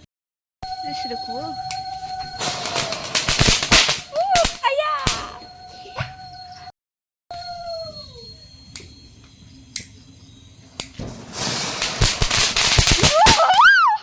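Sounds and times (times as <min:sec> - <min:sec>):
wavering rising high tone: 0:00.6 - 0:06.7, 0:07.3 - 0:10.7
fireworks cracking and banging: 0:02.2 - 0:05.4, 0:10.8 - 0:14.0
firework hiss: 0:02.4 - 0:04.6, 0:10.8 - 0:13.6.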